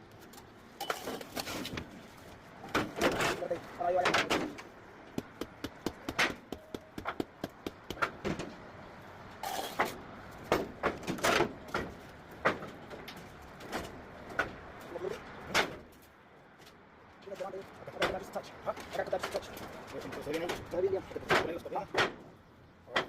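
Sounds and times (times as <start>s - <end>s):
knocks of tools and stone: 17.9s - 22.3s.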